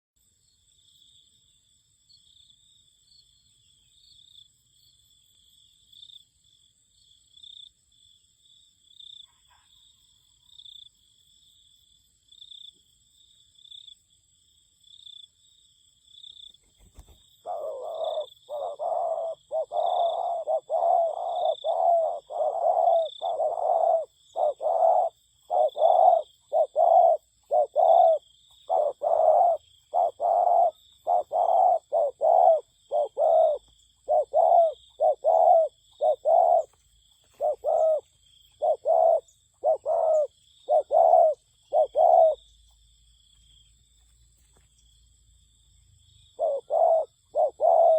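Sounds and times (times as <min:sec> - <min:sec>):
insects chirring: 0:00.2 - 0:47.9
dove cooing: 0:16.9 - 0:42.7, 0:46.3 - 0:47.9.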